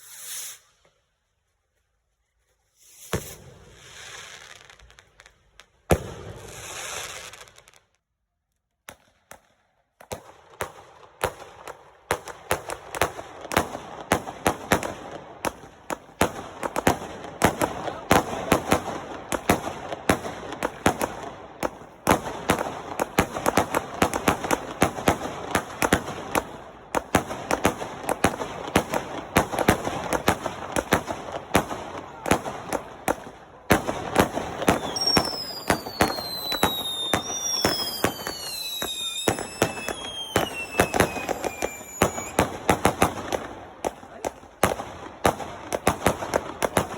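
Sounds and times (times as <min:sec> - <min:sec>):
fireworks crackling bangs: 0:02.8 - 0:08.0, 0:11.3 - 0:46.9
whistling fireworks falling in pitch: 0:12.6 - 0:44.0.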